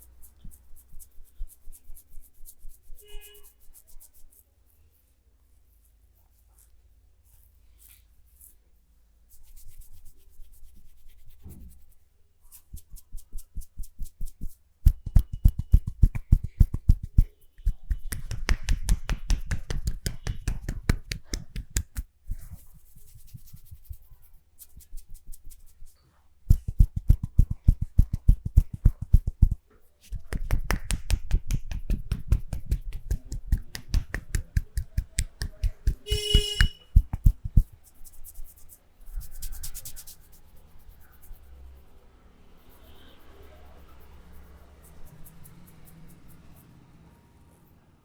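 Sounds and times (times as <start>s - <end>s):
hands rubbing skin: 0.0s - 4.4s, 9.3s - 42.0s
hand massage slaps and taps: 12.7s - 24.0s, 26.5s - 38.2s.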